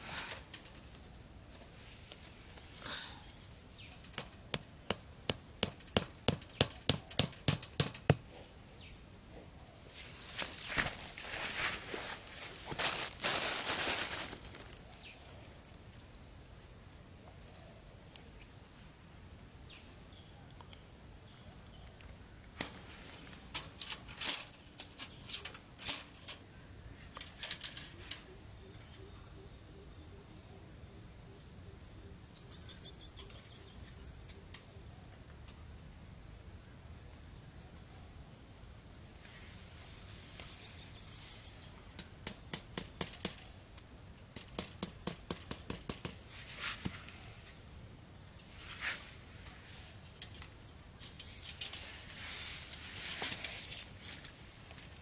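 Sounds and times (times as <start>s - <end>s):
sharp clicks and rustles: 0.0s - 2.7s, 3.4s - 8.4s, 21.5s - 26.5s, 27.1s - 29.1s, 41.9s - 47.2s, 48.4s - 55.0s
small bird chirping: 27.8s - 34.9s, 40.4s - 42.0s, 51.0s - 52.0s
brief rustle: 48.4s - 55.0s.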